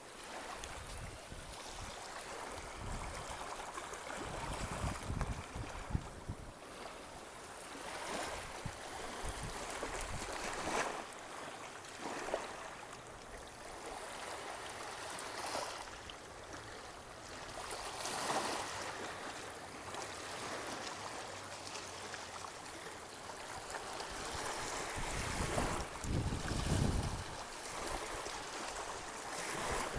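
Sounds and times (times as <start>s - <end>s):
sea waves washing onto beach: 0.1s - 29.9s
wind buffeting microphone: 4.2s - 6.5s, 24.3s - 28.2s.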